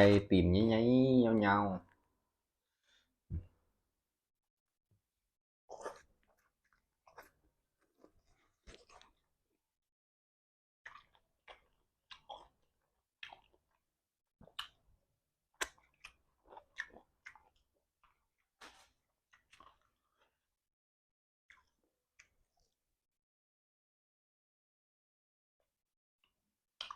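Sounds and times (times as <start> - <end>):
chewing and sucking sounds: 5.7 - 9.3, 10.9 - 13.8, 15.6 - 18.5.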